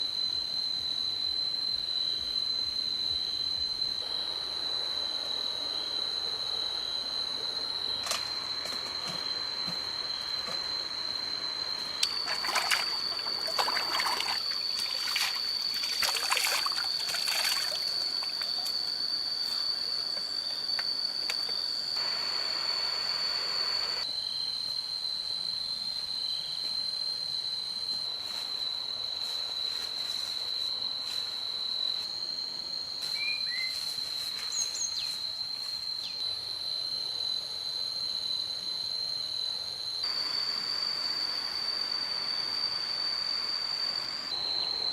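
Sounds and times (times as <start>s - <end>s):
high-pitched insect drone: 0.0s - 44.9s.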